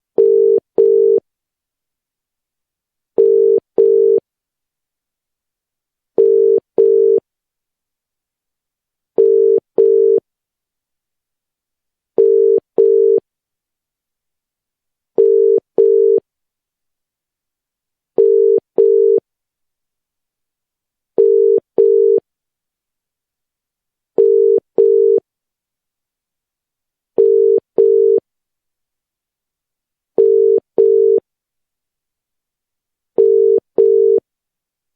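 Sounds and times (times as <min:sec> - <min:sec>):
telephone ringback tone: 0:06.2 - 0:07.2, 0:27.2 - 0:28.2, 0:30.2 - 0:31.2, 0:33.2 - 0:34.2.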